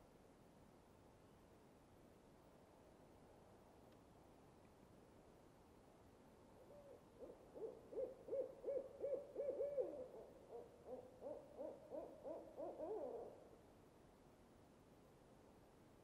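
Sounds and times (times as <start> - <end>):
owl hooting: 6.6 - 13.4.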